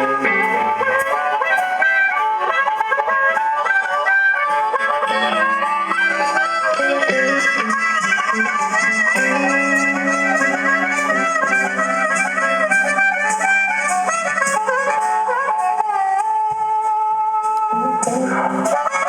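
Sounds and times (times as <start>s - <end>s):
wind instrument melody: 0.0s - 19.0s
steady low chord: 5.2s - 14.6s.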